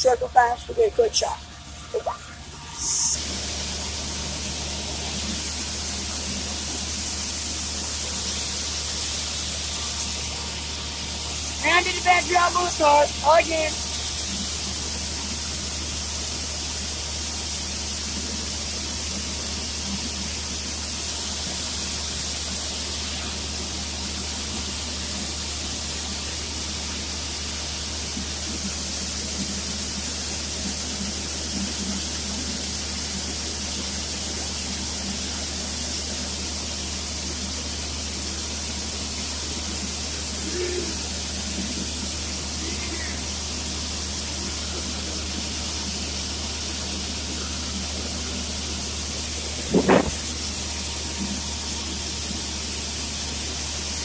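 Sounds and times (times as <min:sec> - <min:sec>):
tractor engine hum: 0:00.0 - 0:16.3, 0:46.3 - 0:52.4.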